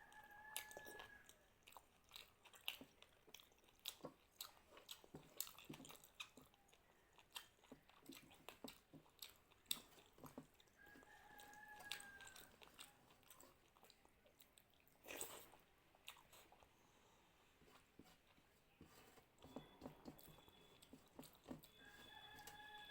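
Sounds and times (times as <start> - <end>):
wet chewing mouth clicks: 0.6 - 16.7.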